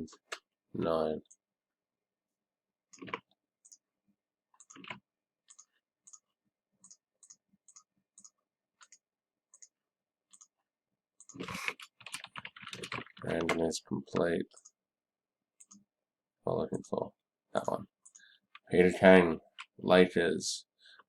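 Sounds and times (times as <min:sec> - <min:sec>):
computer mouse clicking: 0:02.9 - 0:03.8, 0:04.6 - 0:06.2, 0:06.8 - 0:10.6, 0:11.2 - 0:13.6, 0:15.6 - 0:15.8.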